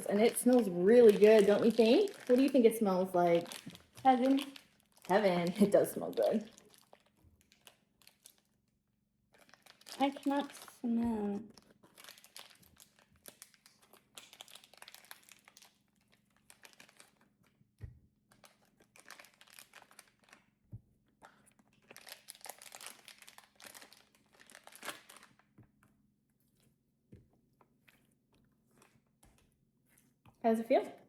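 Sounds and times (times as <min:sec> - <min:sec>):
plastic pouch crinkling: 0:00.0 - 0:08.6, 0:09.3 - 0:17.5, 0:18.3 - 0:20.6, 0:21.2 - 0:25.6.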